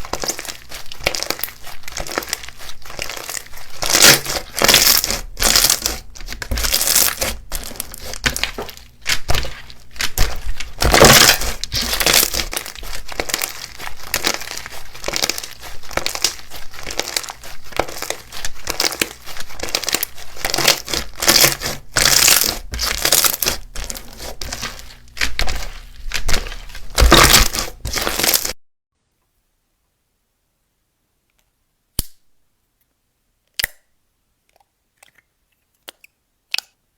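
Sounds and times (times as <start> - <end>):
slime crackling pops: 3.8 - 9.4.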